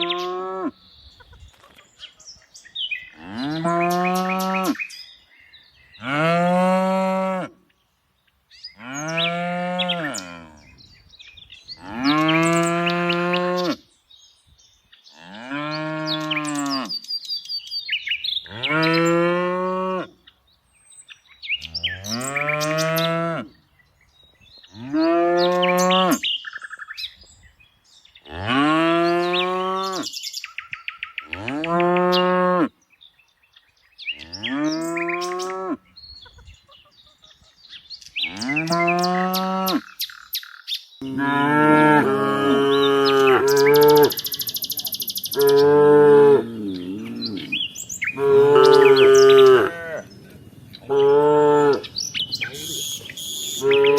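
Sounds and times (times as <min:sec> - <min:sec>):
faint birds chirping: 0:07.6 - 0:19.5, 0:20.1 - 0:53.9
cattle mooing: 0:41.0 - 0:50.1, 0:50.9 - 0:52.8, 0:53.4 - 0:53.9.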